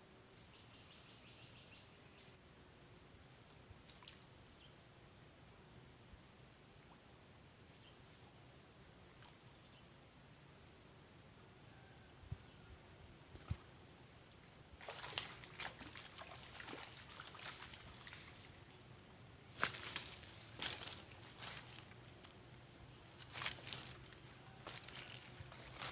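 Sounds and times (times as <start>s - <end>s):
high-pitched insect drone: 19.5s - 25.9s.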